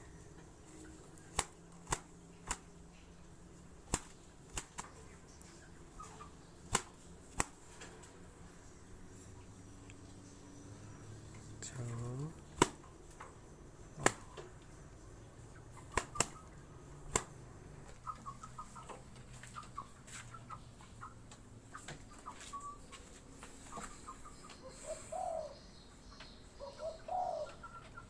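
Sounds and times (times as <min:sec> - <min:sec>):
dove cooing: 0:23.5 - 0:25.6, 0:26.6 - 0:28.0.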